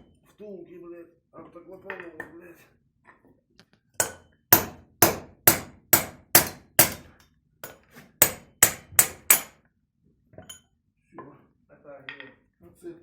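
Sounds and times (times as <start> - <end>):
hammer striking metal: 4.0 - 9.6.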